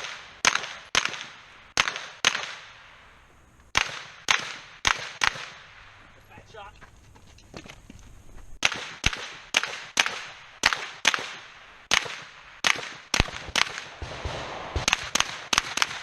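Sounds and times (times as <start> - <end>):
rapid rifle shots: 0.0 - 2.8, 3.7 - 5.8, 8.6 - 16.0.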